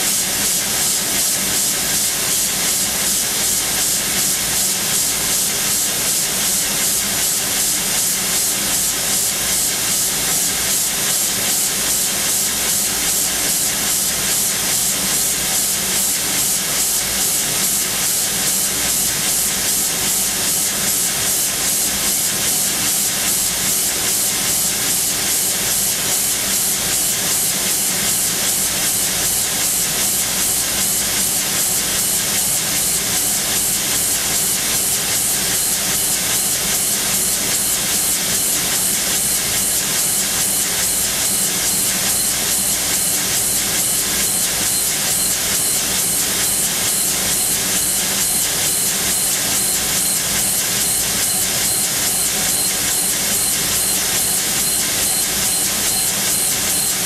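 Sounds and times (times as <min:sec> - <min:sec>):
machine spindle drilling steel: 0:39.2 - 0:57.0.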